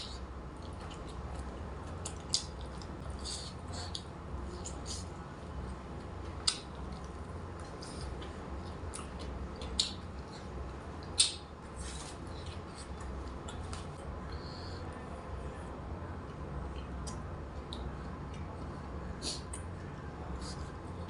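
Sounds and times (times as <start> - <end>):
chewing and crunching food: 0.0 - 14.8
steady low hum: 0.0 - 21.0.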